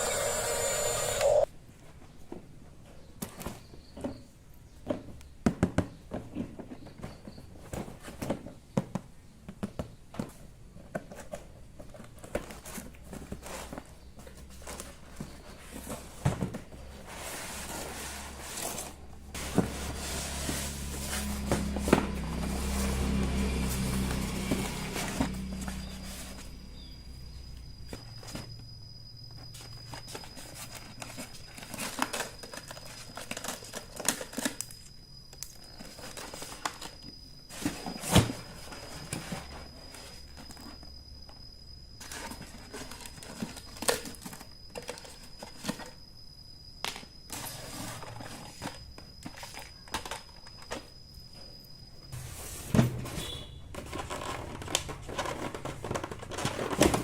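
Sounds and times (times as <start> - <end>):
plastic and cardboard crinkling: 6.1 - 28.6, 29.4 - 40.8, 52.2 - 57.0.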